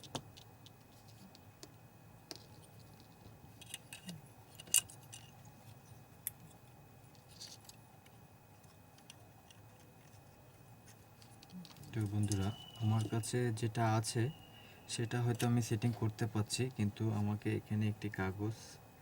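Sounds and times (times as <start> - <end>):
small parts and tools clicking: 0.0 - 13.4.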